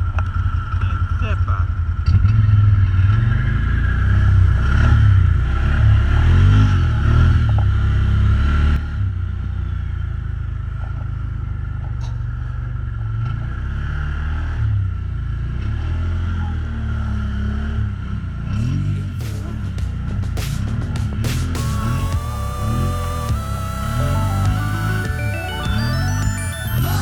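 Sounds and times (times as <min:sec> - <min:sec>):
atv engine revving: 0:15.8 - 0:25.1.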